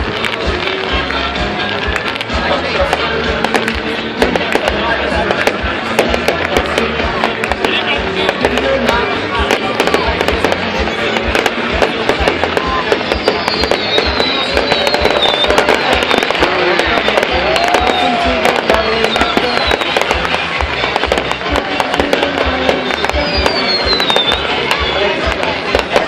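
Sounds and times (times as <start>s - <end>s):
fireworks crackling and banging: 0.0s - 26.0s
music: 0.0s - 26.0s
falling firework whistles: 12.2s - 20.4s, 22.7s - 26.0s.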